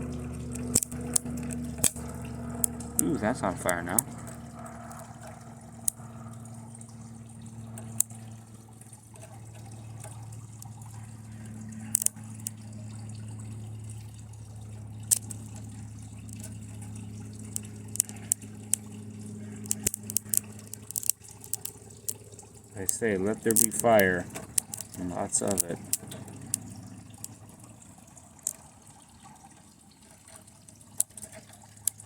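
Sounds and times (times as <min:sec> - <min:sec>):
steady low hum: 0:00.0 - 0:32.0
circuit board arcing pops and crackles: 0:00.4 - 0:04.3, 0:19.6 - 0:21.8.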